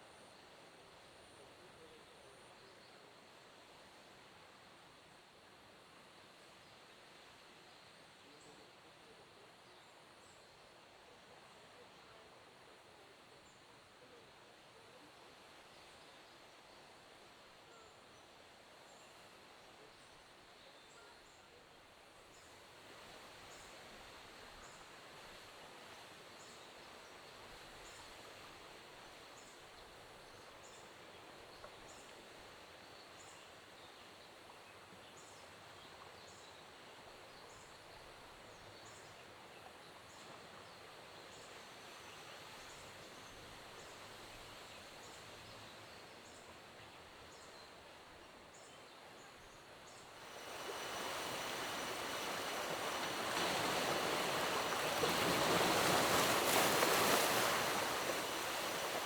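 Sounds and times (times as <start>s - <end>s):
rush of falling water: 50.2s - 59.0s.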